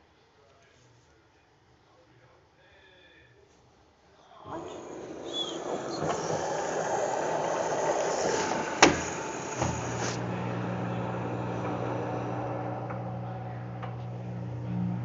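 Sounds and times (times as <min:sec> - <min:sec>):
water rushing into washing machine: 0:04.4 - 0:13.1
steady low hum: 0:04.5 - 0:15.0.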